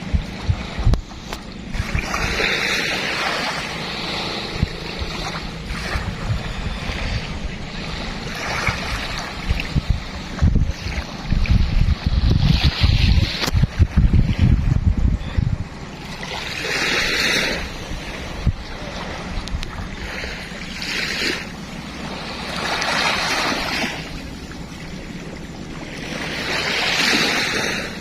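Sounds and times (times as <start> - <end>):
wind buffeting microphone: 0.0 - 28.0
sea waves washing onto shore: 16.0 - 28.0.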